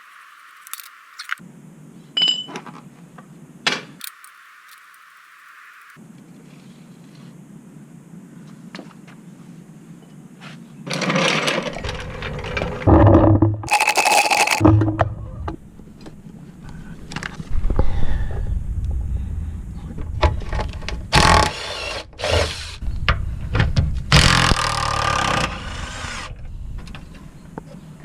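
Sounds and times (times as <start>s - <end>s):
low rumble: 11.8s - 13.7s, 14.6s - 15.8s, 17.4s - 21.2s.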